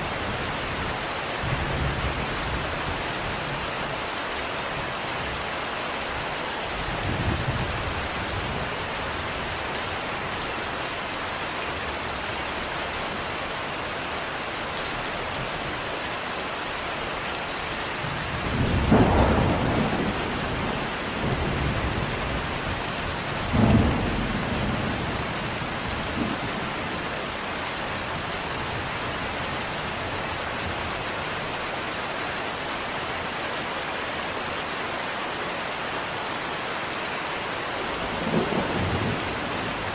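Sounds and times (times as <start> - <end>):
steady rain falling: 0.0 - 39.9
thunder rumbling: 18.4 - 26.9, 38.0 - 39.9.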